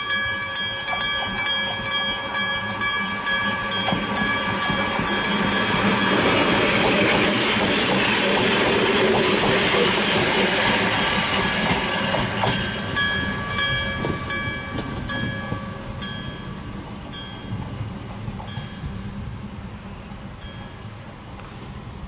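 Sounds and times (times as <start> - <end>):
level crossing bell striking: 0.0 - 7.2, 11.4 - 17.7
passing train rumble: 0.0 - 22.0.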